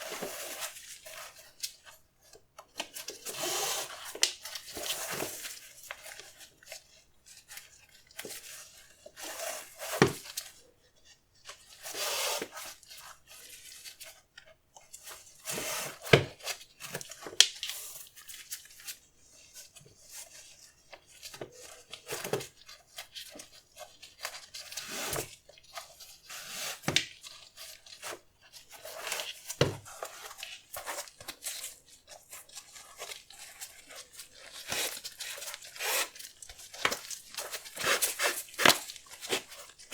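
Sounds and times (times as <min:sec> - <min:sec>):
packaging rustling: 0:30.6 - 0:39.9.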